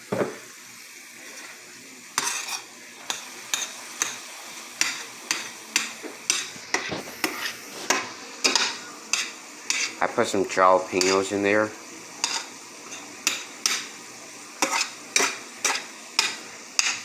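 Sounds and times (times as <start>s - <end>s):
meat and onions sizzling in a pan: 0.0s - 17.0s
utensil scraping and knocking a pan: 2.2s - 4.2s, 4.8s - 10.0s, 14.6s - 17.0s.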